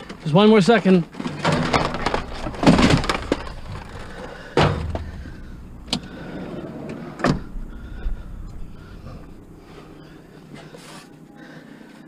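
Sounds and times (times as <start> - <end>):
hard objects knocking down: 1.2 - 6.3
low steady rumble: 1.4 - 10.9.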